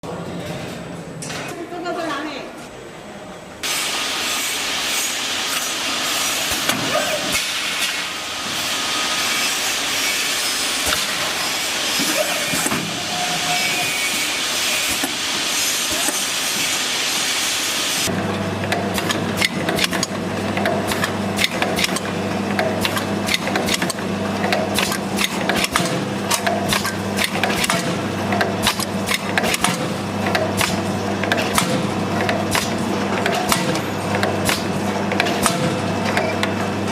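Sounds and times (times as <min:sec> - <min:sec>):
packaging machinery hiss: 0:03.6 - 0:18.1
clicks and clatters of moving parts: 0:18.6 - 0:36.7.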